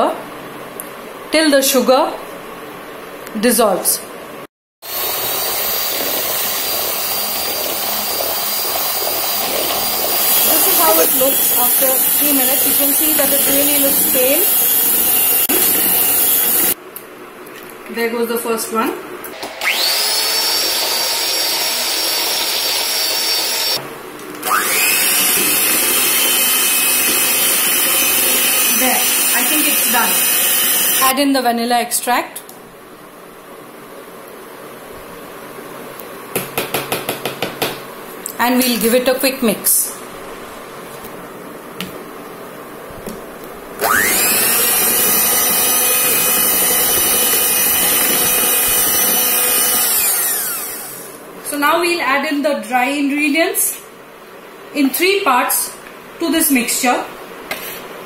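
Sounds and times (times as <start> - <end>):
hand blender motor whine: 4.8 - 16.8, 19.4 - 23.8, 24.4 - 31.1, 43.8 - 51.2.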